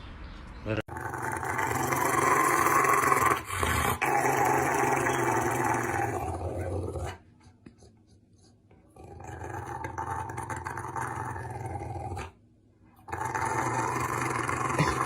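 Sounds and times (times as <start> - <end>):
dog growling: 0.9 - 7.2, 8.9 - 12.4, 13.0 - 15.0.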